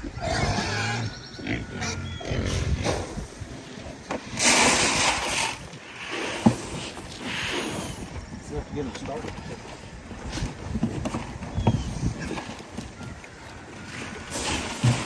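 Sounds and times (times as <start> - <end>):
pigs grunting: 0.0 - 3.5.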